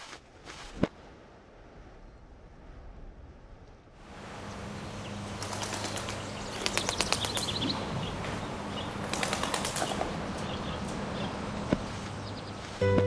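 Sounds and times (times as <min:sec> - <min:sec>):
bird wings flapping: 0:05.3 - 0:10.2.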